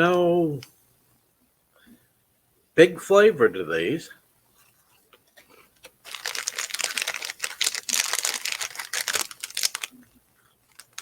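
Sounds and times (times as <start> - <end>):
plastic snack bag crinkling: 5.8 - 11.0.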